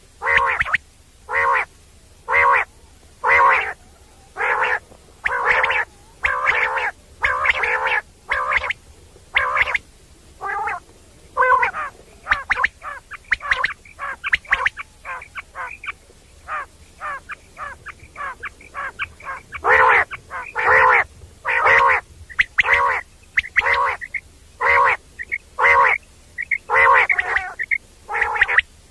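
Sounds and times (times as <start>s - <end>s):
quail calling: 0.2s - 28.9s.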